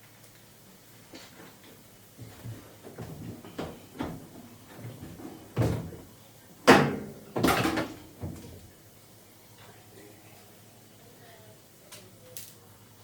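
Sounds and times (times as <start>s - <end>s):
knocks on machine parts: 6.7s - 8.4s.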